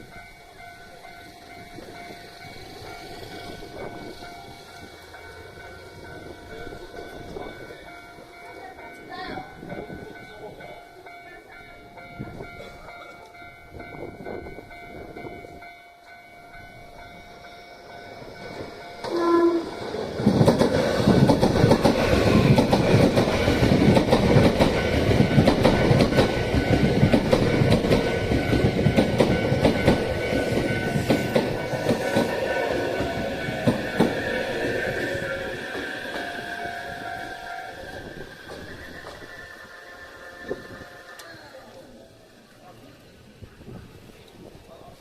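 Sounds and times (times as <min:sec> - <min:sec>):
train wheels clattering over rail joints: 0:18.5 - 0:41.4
train horn blast: 0:19.0 - 0:20.0.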